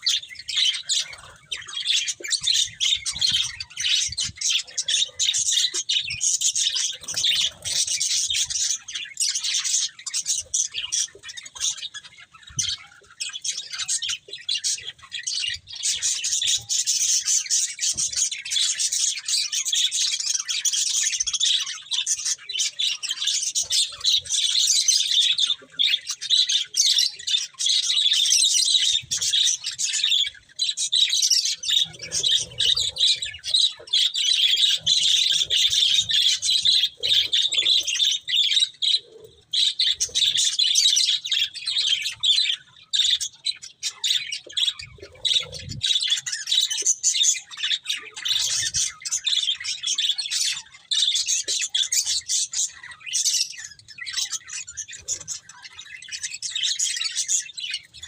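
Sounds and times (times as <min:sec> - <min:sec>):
budgerigars chirping and chattering: 0:00.0 - 0:58.0.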